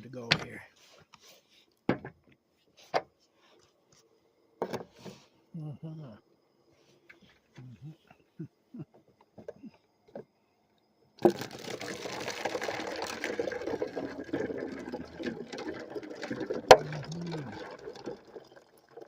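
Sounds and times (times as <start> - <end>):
water pouring into container: 11.2 - 19.0.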